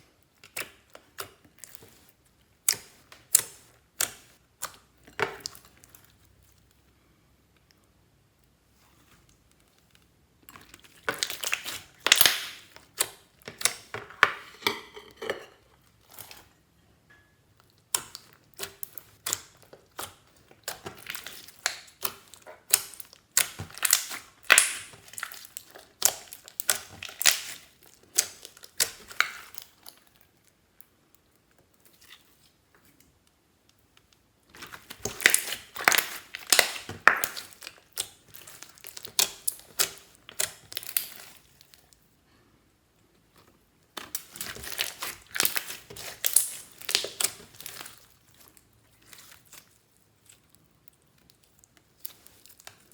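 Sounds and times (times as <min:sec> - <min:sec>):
slime crackling and popping: 0:10.6 - 0:13.9, 0:17.9 - 0:30.1, 0:34.6 - 0:41.9, 0:43.9 - 0:52.9.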